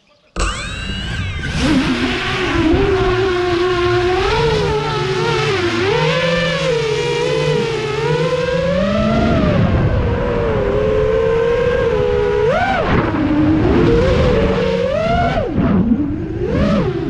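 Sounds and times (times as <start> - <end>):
drone propellers whining: 0.3 - 17.0.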